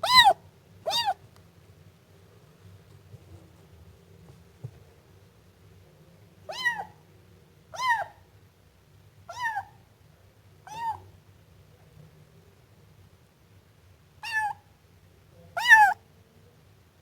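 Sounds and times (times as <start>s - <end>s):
kitten meowing: 0.0s - 1.2s, 6.5s - 6.9s, 7.8s - 8.2s, 9.3s - 9.7s, 10.7s - 11.0s, 14.2s - 14.6s, 15.6s - 16.0s.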